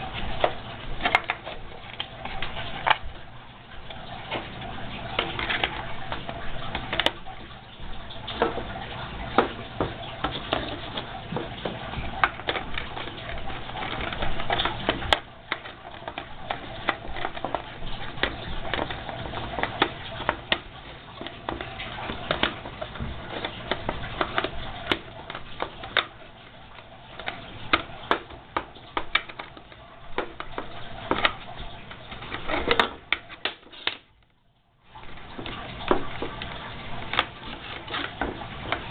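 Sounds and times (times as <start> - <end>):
plastic parts clicking and rattling: 0.0 - 38.9.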